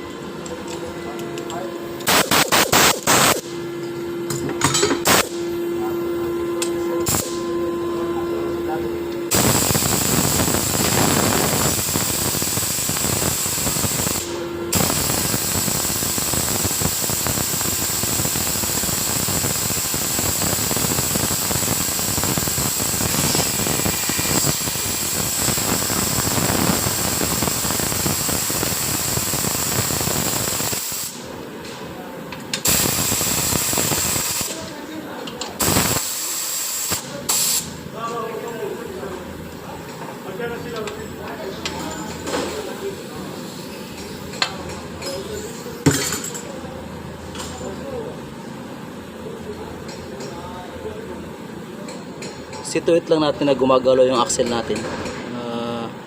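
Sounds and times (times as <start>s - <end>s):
compressed air hiss: 9.3s - 31.2s, 35.6s - 37.7s.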